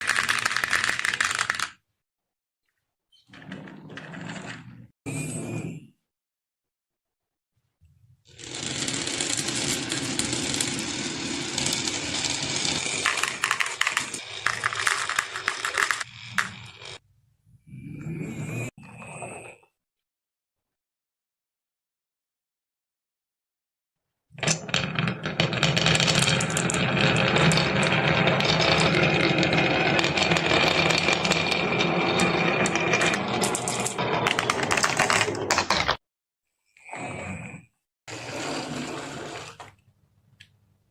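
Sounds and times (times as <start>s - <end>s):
marbles rolling on wooden track: 0.0s - 1.8s, 8.4s - 17.0s, 24.4s - 36.0s.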